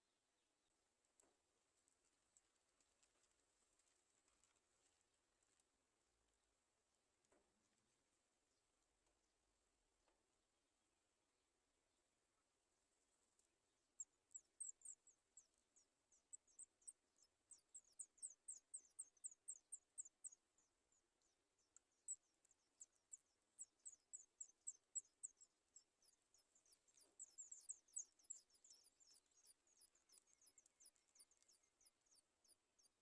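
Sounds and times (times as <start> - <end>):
baby birds chirping: 14.0 - 33.0.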